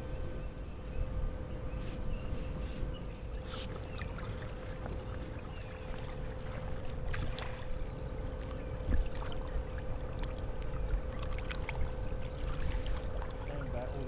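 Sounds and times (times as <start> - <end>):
water noise: 3.4 - 14.0
small splashes: 3.5 - 14.0.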